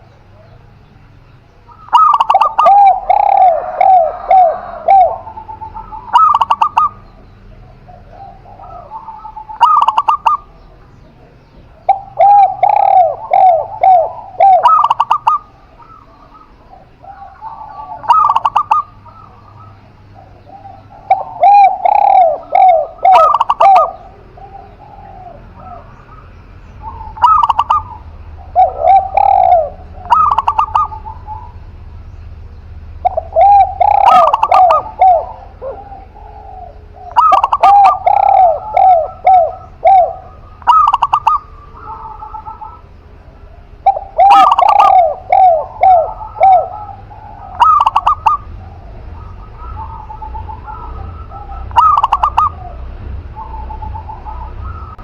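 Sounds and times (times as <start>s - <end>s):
doves cooing: 0.0s - 55.0s.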